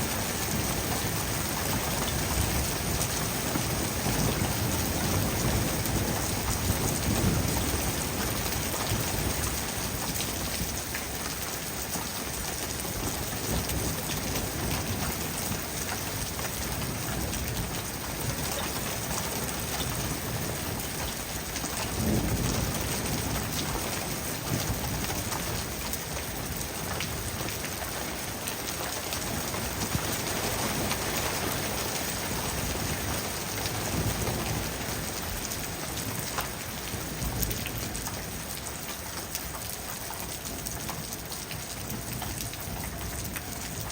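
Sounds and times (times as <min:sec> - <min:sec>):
heavy rain falling: 0:00.0 - 0:43.9
low rumbles of thunder: 0:00.2 - 0:11.0, 0:12.7 - 0:27.7.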